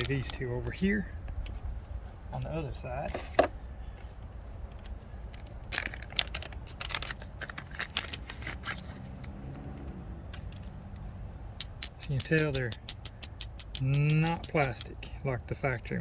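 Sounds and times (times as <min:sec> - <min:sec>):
clicks rustles and crinkles of packaging: 0:05.3 - 0:09.0.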